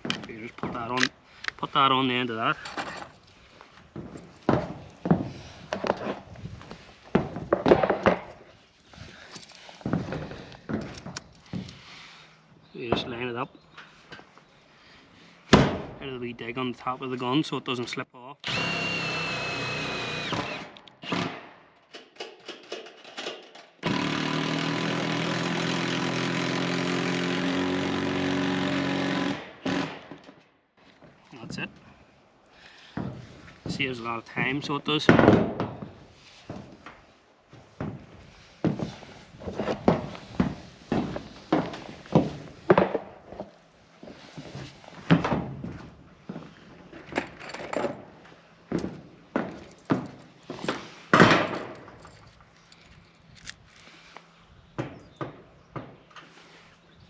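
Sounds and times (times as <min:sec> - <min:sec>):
knocks and thuds on metal roof: 0:07.2 - 0:08.4, 0:35.0 - 0:36.8.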